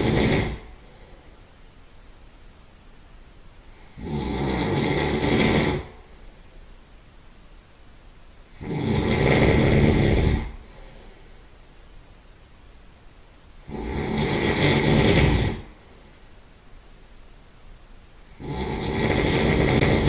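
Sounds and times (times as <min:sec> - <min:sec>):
loud nasal snoring: 0:00.0 - 0:01.2, 0:03.7 - 0:06.1, 0:08.5 - 0:11.1, 0:13.6 - 0:15.9, 0:18.2 - 0:20.0.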